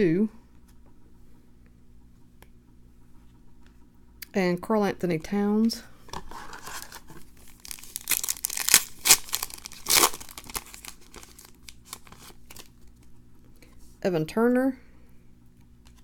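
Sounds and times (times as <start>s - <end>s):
cards rustling: 6.0s - 13.1s
wrapper crinkling: 6.2s - 13.1s
foil pack tearing: 6.3s - 12.8s.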